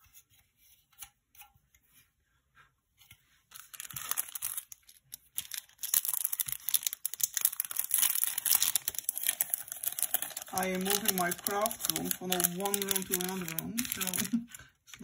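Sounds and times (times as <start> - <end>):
crinkly packaging rustling: 3.5 - 15.0.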